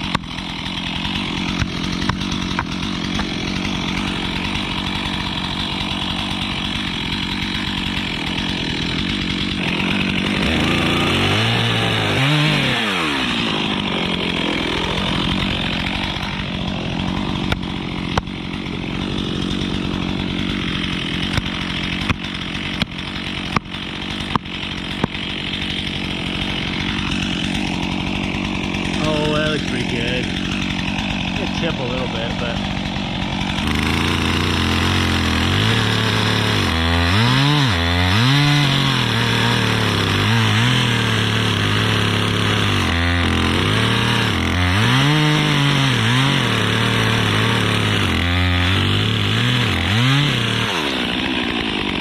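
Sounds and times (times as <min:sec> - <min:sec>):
chainsaw cutting at high revs: 0:00.0 - 0:52.0
sharp wood cracks: 0:00.0 - 0:52.0.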